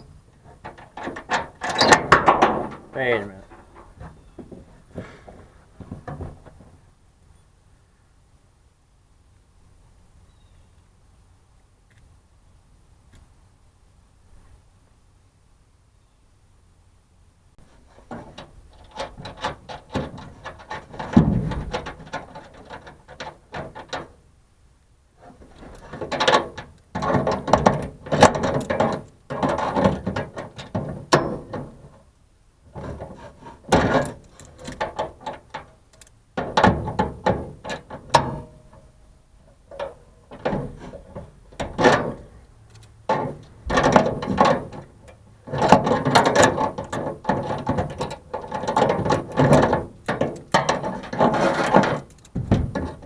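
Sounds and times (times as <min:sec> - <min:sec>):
metallic clicking and rattling: 0:00.4 - 0:04.2, 0:17.7 - 0:24.2, 0:25.2 - 0:32.0, 0:32.7 - 0:53.0.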